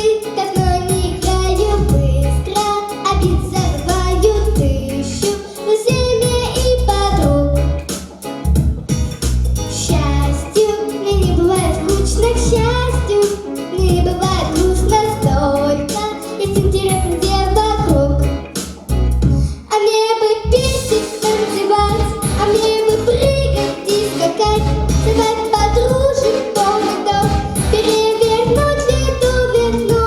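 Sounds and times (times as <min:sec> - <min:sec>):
girl singing pop song: 0:00.0 - 0:08.2, 0:09.7 - 0:30.0
pulsing bass beat: 0:00.6 - 0:02.4, 0:03.2 - 0:05.2, 0:08.5 - 0:10.4, 0:11.2 - 0:13.1, 0:13.8 - 0:15.8, 0:16.5 - 0:19.5, 0:20.6 - 0:26.5, 0:27.1 - 0:30.0.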